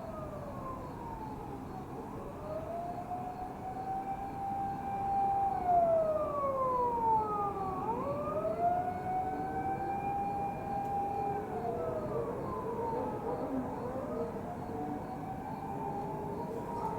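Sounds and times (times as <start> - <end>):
warning siren wailing: 2.5 - 16.9
second siren at different pitch: 3.8 - 12.1.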